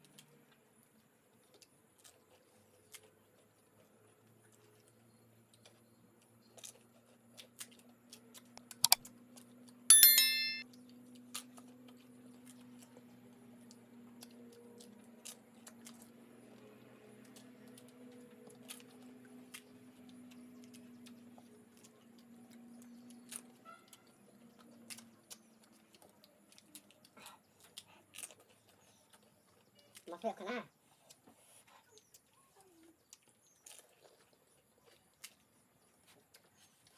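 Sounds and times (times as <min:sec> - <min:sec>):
crisp crunches of chewing: 0:00.0 - 0:09.5, 0:11.2 - 0:36.9
bright ringing clink: 0:09.9 - 0:10.6.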